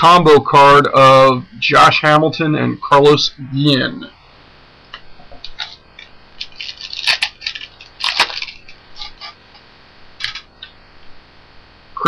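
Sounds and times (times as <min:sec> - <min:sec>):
wrapper crinkling and tearing: 0:05.5 - 0:09.4, 0:10.2 - 0:10.5.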